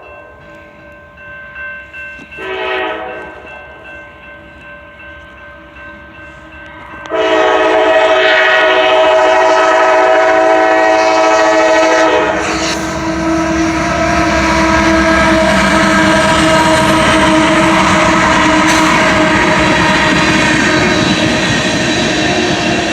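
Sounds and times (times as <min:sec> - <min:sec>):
passing train rumble: 0:00.0 - 0:22.9
locomotive air horn chord: 0:02.4 - 0:03.5, 0:07.0 - 0:22.9.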